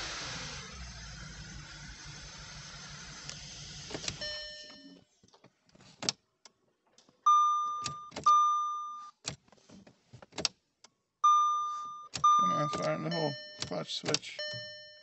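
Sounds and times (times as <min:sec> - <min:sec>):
air leak hiss: 0:00.0 - 0:04.2
car engine running: 0:00.0 - 0:04.3
dashboard warning chimes: 0:04.1 - 0:05.1, 0:07.3 - 0:09.2, 0:11.2 - 0:15.0.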